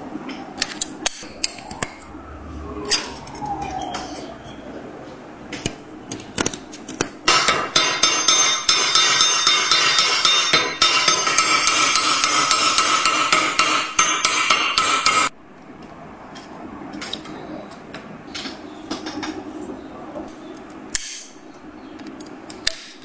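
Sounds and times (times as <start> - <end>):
hammer striking metal rivets: 5.6 - 15.3.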